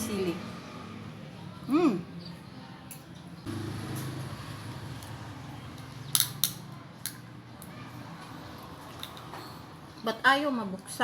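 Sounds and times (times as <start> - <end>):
shellfish shell cracking open: 6.1 - 7.2.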